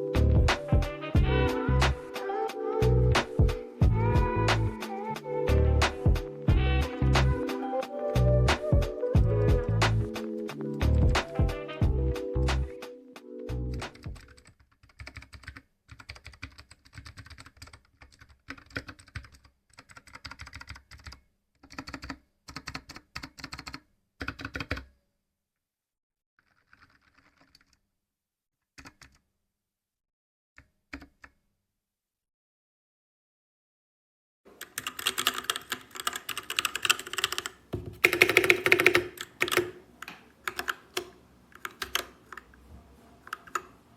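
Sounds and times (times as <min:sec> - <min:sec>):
background music: 0:00.0 - 0:14.4
mechanical keyboard typing: 0:13.7 - 0:24.9, 0:26.4 - 0:27.8, 0:28.8 - 0:29.2, 0:34.6 - 0:42.6, 0:43.2 - 0:43.8.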